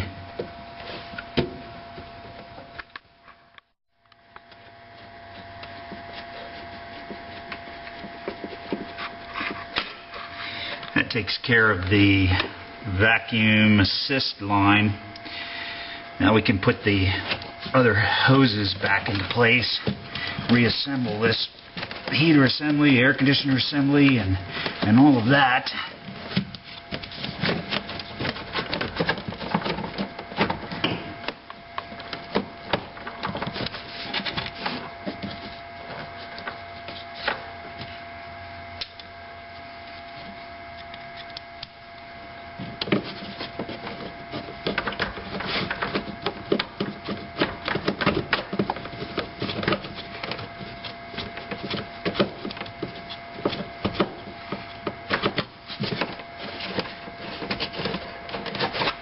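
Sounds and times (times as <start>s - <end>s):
plastic parts clicking and rubbing: 26.0s - 37.4s, 42.6s - 59.0s.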